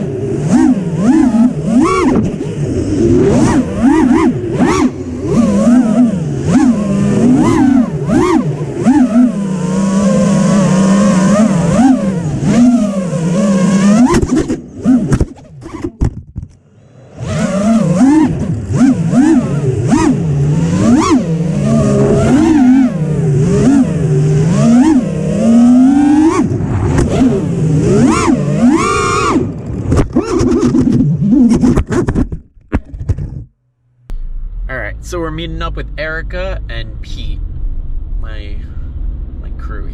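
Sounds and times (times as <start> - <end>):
drone motors buzzing: 0.0 - 16.0, 16.6 - 31.7.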